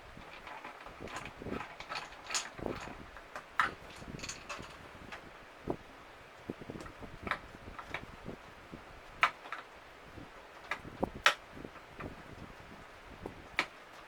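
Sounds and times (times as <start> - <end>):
tools and plastic parts clicking: 0.2 - 5.3
sharp plastic clacks: 10.6 - 11.4.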